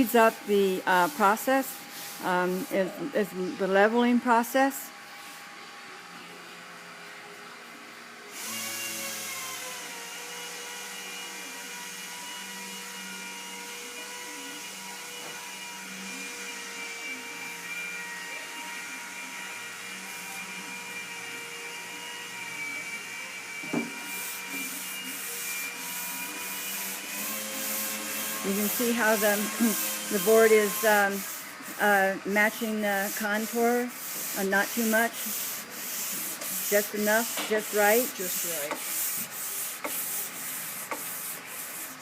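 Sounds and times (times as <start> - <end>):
sanding board rubbing: 0.0 - 2.8, 24.0 - 42.0
knock: 23.6 - 23.9.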